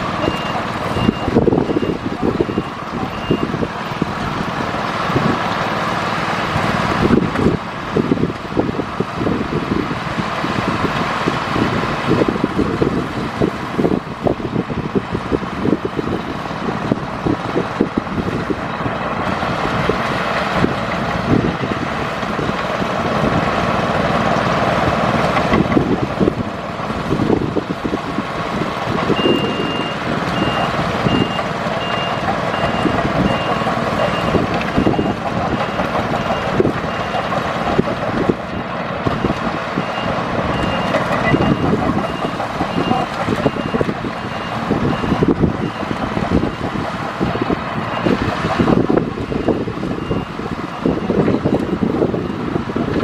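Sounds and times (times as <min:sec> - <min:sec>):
bulldozer diesel engine under load: 0:00.0 - 0:53.0
reversing alarm beeping: 0:00.1 - 0:03.6, 0:29.1 - 0:37.2, 0:38.5 - 0:46.8, 0:47.4 - 0:51.2.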